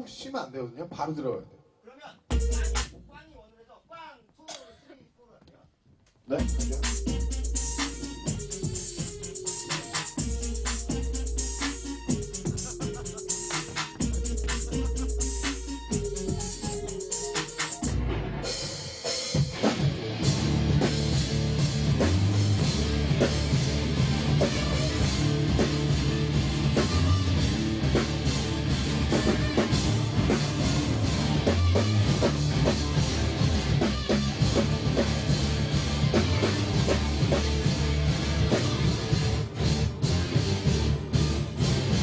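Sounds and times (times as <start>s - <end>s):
bass guitar: 2.3s - 3.0s, 6.3s - 42.0s
drum kit beat: 2.3s - 3.2s, 6.3s - 42.0s
electric guitar: 19.3s - 42.0s.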